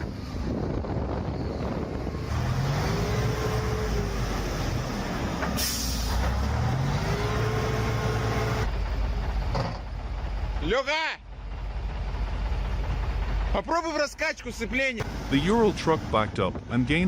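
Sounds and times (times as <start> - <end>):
truck engine revving: 0.0 - 10.6.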